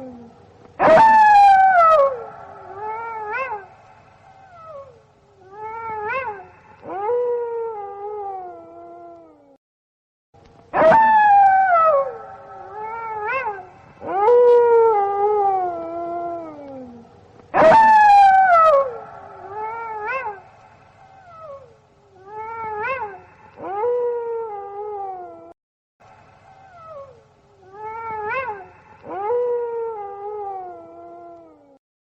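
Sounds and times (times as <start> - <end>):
wolves howling: 0.0 - 3.8, 10.8 - 17.0, 17.6 - 20.5, 26.7 - 31.8.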